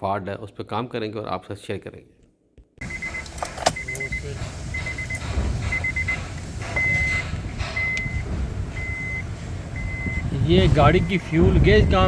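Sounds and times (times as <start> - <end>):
electronic warning beeps: 2.8 - 12.0
vehicle engine rumbling: 2.8 - 12.0.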